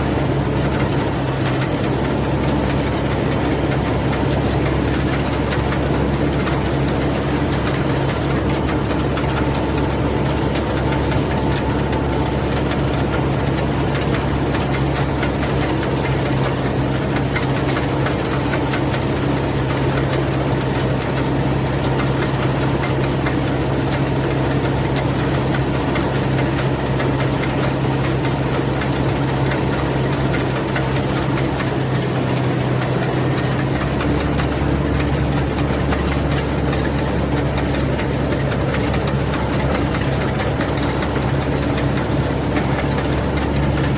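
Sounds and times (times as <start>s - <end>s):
combine harvester engine humming: 0.0s - 43.9s.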